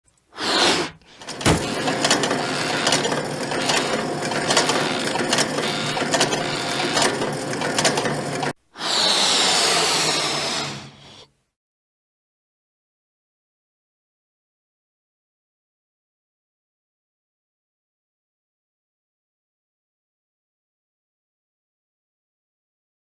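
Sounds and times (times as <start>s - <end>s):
rotary hammer drill whirring: 1.1s - 10.9s.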